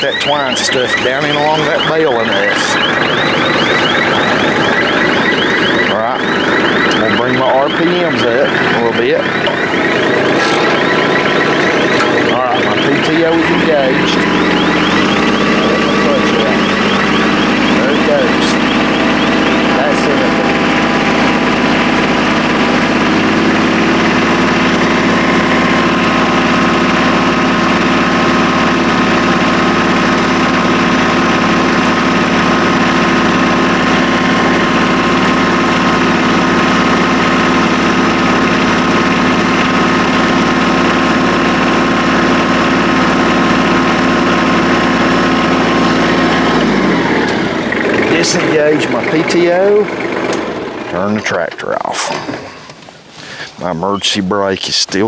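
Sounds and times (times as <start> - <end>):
tractor engine running: 0.0 - 55.0.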